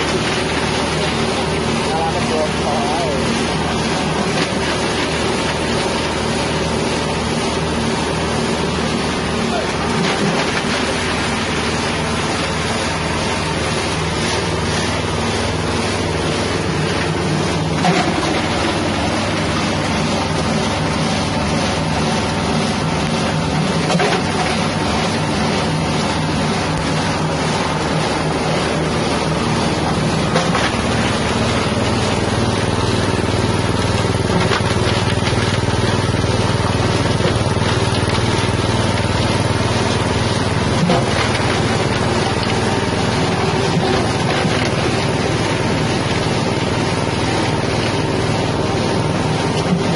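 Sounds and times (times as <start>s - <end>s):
grinding machine engine running: 0.0s - 49.9s.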